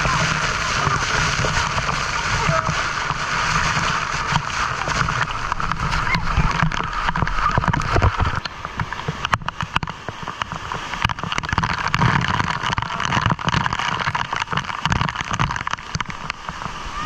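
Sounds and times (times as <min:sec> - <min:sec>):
waterfall rushing: 0:00.0 - 0:17.0
knocks and clicks near microphone: 0:03.1 - 0:16.8.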